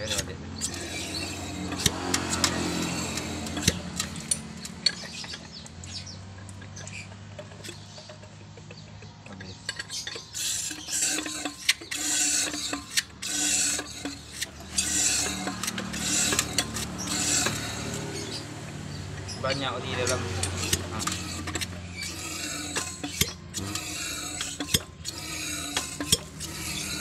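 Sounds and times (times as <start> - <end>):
two-stroke engine running: 0.0 - 27.0
engine clicking rattling knock: 0.6 - 10.3.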